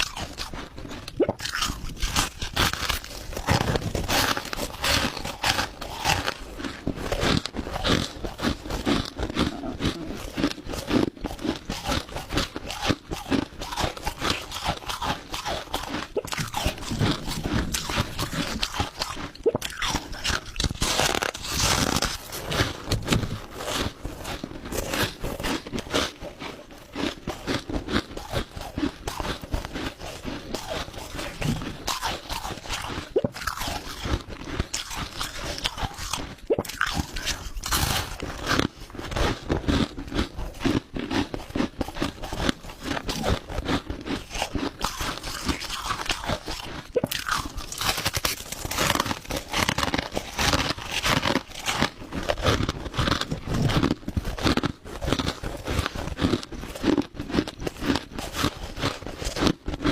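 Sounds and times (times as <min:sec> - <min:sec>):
chewing crushed ice: 0:00.0 - 0:59.9.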